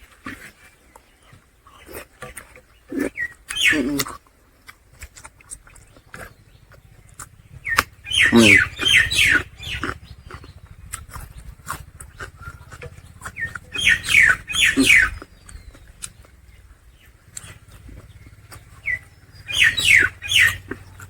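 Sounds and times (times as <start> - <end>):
smacking clicks of eating: 0.0 - 21.0
animal falling calls: 6.0 - 15.4, 17.4 - 20.8.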